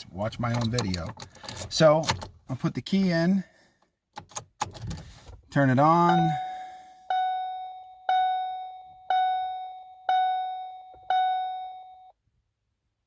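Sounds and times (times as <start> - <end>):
car warning chime dinging: 5.7 - 12.2.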